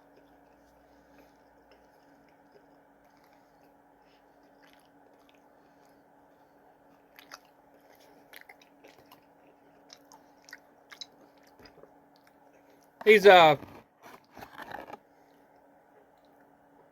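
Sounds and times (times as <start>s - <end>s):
person chewing and crunching: 0.0s - 13.0s
low steady hum: 0.0s - 16.9s.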